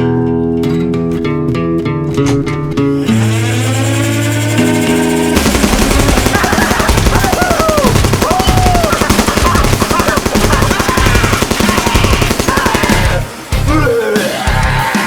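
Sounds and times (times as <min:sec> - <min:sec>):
automatic gunfire: 0:05.3 - 0:13.5
people shouting: 0:05.4 - 0:15.0.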